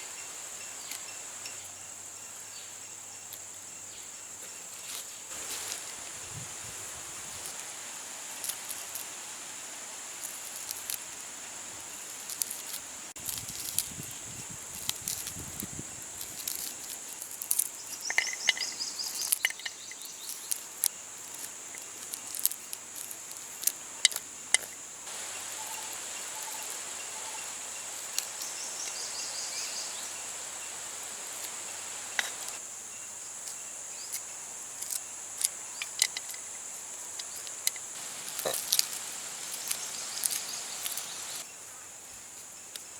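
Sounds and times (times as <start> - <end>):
insects droning: 0.0 - 42.9
bird chirps: 17.8 - 20.5, 38.0 - 41.4.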